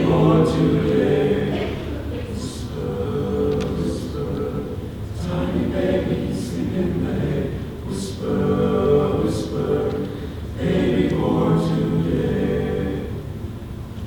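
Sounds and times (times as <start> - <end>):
men's chorus singing: 0.0 - 13.4.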